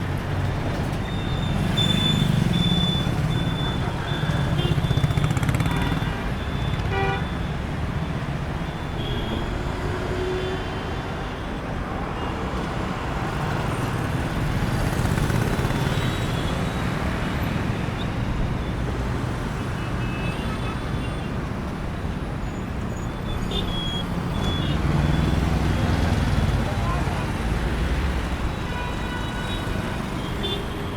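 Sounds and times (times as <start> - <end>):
traffic rumble: 0.0 - 30.9
car horn toot: 3.8 - 7.4.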